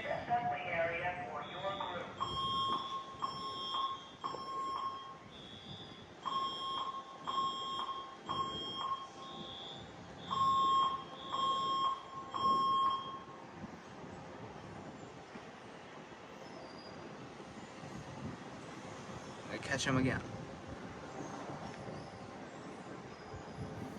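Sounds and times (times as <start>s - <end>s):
pulsing alarm horn tone: 1.2s - 13.5s
high-pitched alarm beep: 1.4s - 13.4s.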